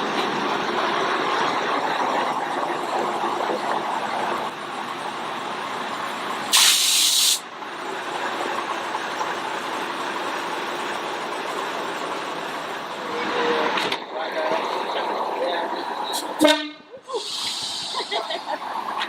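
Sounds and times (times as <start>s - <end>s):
steam train running: 0.0s - 19.0s
steam hissing: 6.5s - 7.4s, 17.1s - 19.0s.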